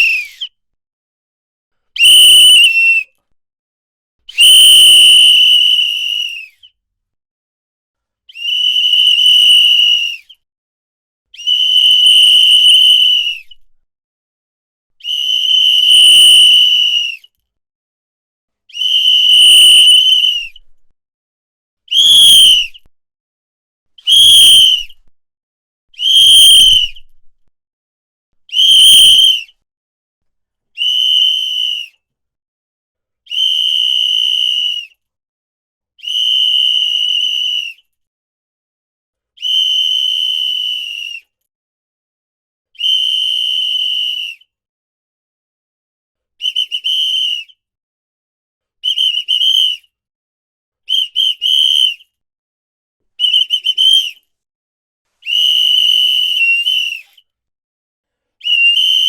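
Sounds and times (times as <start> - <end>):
whistle blasts: 2.0 - 3.0, 21.9 - 22.8, 24.1 - 25.0, 26.0 - 27.2, 28.5 - 29.4, 50.9 - 52.0, 53.2 - 54.2, 55.2 - 57.0, 58.4 - 59.0.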